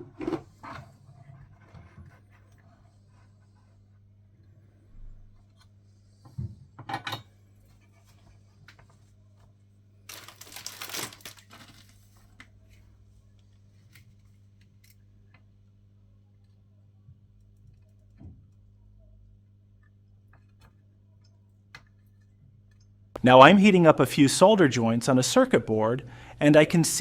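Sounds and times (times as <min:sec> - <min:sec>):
rustling scrape: 0:10.1 - 0:12.3
steady low hum: 0:12.1 - 0:27.0.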